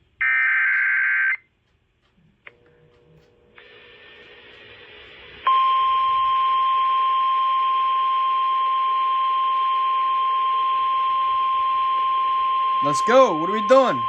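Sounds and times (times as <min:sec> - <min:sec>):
loud steady alert tone: 0:12.8 - 0:14.0.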